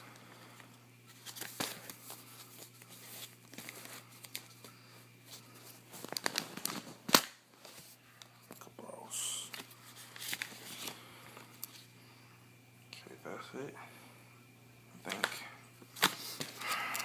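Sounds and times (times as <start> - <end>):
package wrapping tearing and crinkling: 5.7 - 7.8, 9.5 - 11.0.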